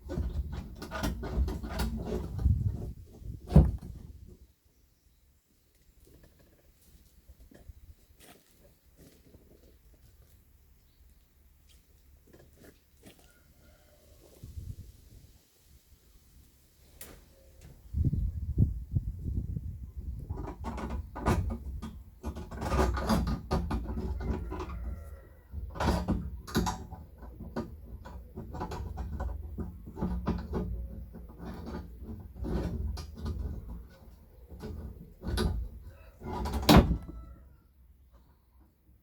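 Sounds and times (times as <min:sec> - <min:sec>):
knocking and scraping on metal bar: 0:00.0 - 0:04.4, 0:20.3 - 0:25.0, 0:25.6 - 0:37.3.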